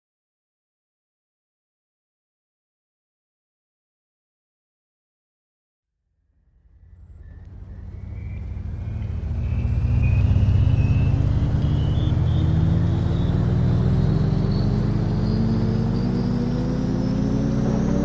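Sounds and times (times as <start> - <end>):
vehicle engine speeding up: 6.5 - 18.0.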